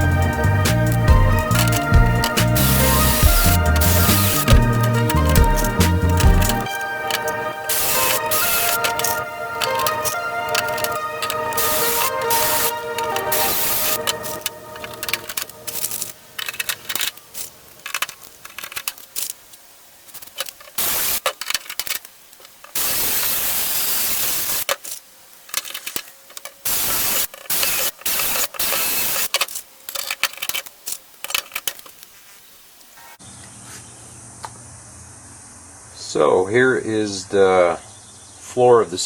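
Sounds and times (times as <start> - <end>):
loud hissing bursts: 0.0 - 25.4, 26.6 - 29.8
sharp clicks and cracks: 0.0 - 32.9.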